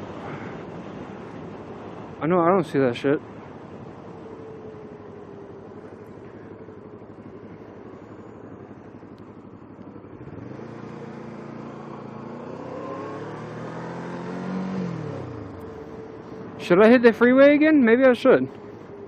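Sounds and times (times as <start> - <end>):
motorcycle engine revving: 4.9 - 16.2.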